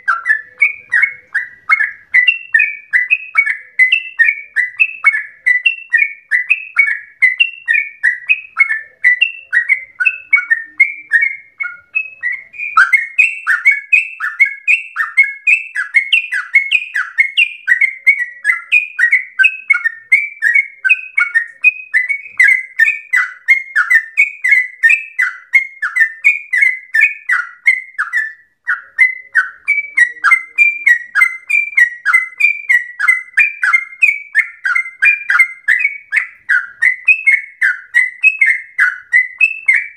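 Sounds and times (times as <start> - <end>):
bird singing bubbling notes: 0.0 - 39.9.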